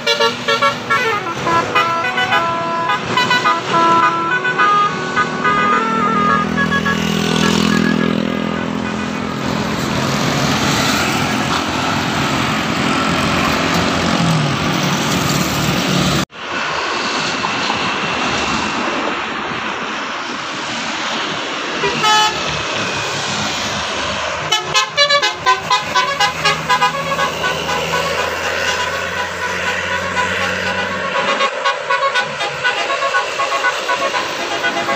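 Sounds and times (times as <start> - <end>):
musical air horns: 0.0 - 11.8, 21.8 - 22.6, 24.3 - 34.9
bus engines running: 0.0 - 34.9.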